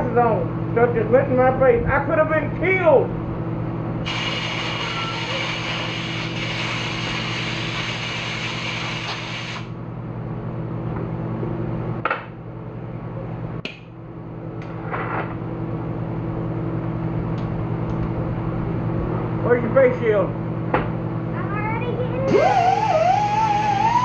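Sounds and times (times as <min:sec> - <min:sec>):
motor hum: 0:00.0 - 0:24.0
compressed air hissing: 0:04.0 - 0:09.7.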